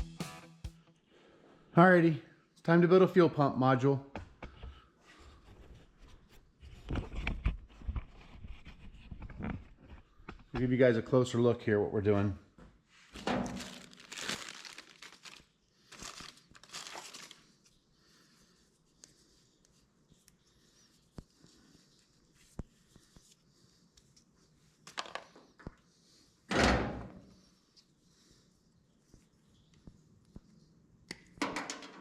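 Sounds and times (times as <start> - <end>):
plastic packaging crinkling: 13.2 - 17.6.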